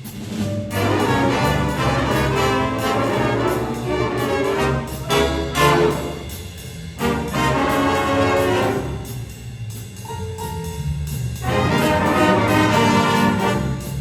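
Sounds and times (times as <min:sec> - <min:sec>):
big band playing: 0:00.0 - 0:14.0
brass section chords: 0:00.6 - 0:09.4, 0:11.4 - 0:14.0.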